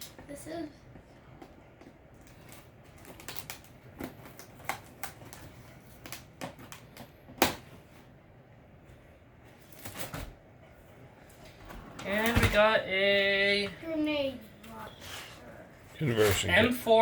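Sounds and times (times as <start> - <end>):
cardboard and packaging crinkling: 2.2 - 7.1.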